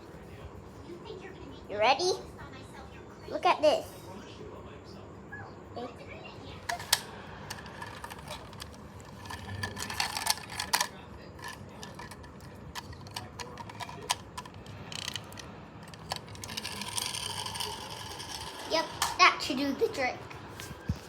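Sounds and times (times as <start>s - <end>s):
mechanical clicking and rattling: 6.7s - 19.2s.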